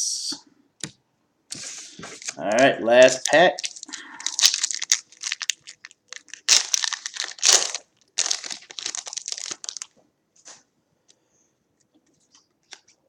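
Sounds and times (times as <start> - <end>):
plastic wrapper crinkling and tearing: 2.1 - 10.0.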